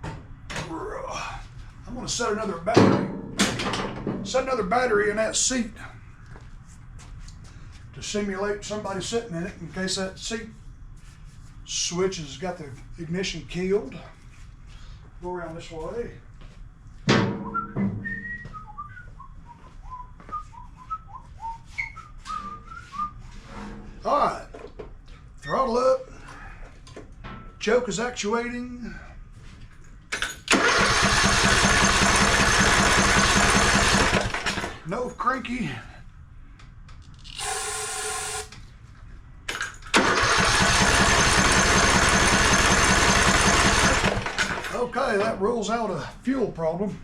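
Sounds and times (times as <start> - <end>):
low thump: 17.1 - 18.3
person whistling a tune: 17.4 - 23.2
mower engine cranking: 30.2 - 34.8, 39.6 - 44.8.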